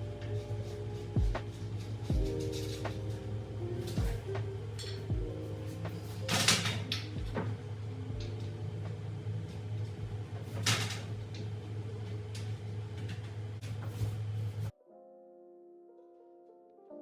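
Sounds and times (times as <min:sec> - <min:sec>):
low hum: 0:00.0 - 0:13.2.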